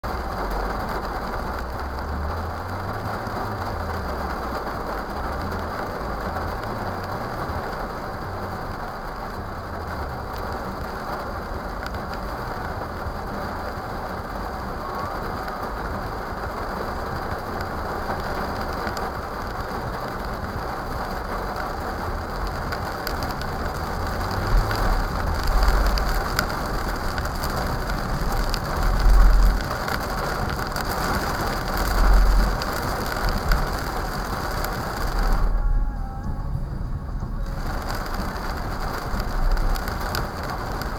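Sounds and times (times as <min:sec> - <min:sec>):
rain hissing on a car: 0:00.0 - 0:40.9
low rumbling thumps: 0:18.6 - 0:40.9.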